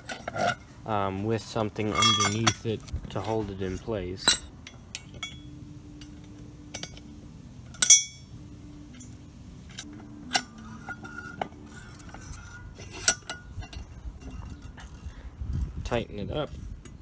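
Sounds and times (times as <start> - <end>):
steel pieces clinking: 0.0 - 0.8, 1.5 - 15.2
ringing clink: 1.9 - 2.6, 4.2 - 7.1, 7.7 - 8.3.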